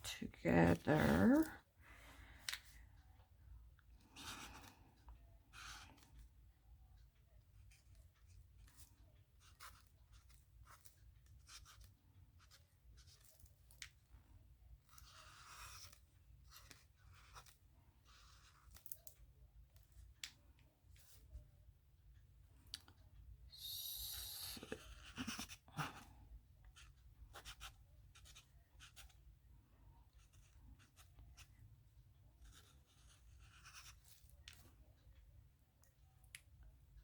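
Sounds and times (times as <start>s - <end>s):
pen scratching on paper: 4.1s - 4.8s, 5.5s - 6.2s, 8.6s - 13.3s, 14.8s - 18.8s, 24.0s - 26.1s, 26.7s - 29.2s, 30.2s - 31.6s, 32.4s - 34.6s.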